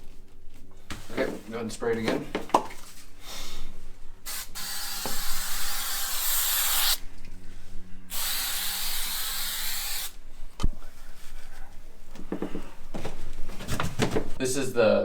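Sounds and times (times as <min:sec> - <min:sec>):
spray hissing from a nozzle: 0:04.2 - 0:07.0, 0:08.1 - 0:10.2.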